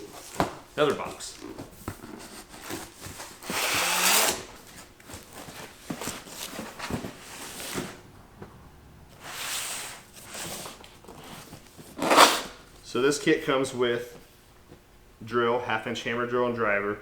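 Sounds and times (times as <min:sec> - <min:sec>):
cardboard rustling: 0:00.0 - 0:12.9.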